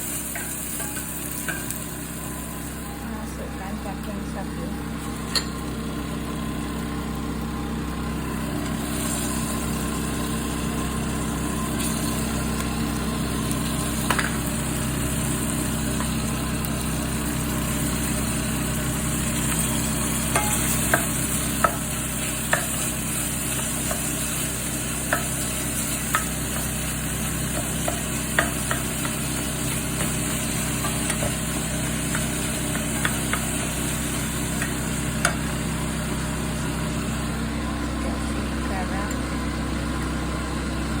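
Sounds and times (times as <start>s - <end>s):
meat sizzling in a pan: 0.0s - 2.8s, 7.9s - 37.6s
utensil knocking against pan: 27.5s - 29.2s.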